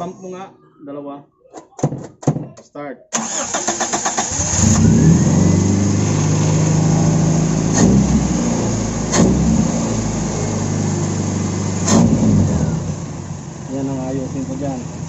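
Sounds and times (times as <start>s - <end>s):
engine cranking: 3.2s - 6.2s
car engine idling: 3.2s - 15.0s.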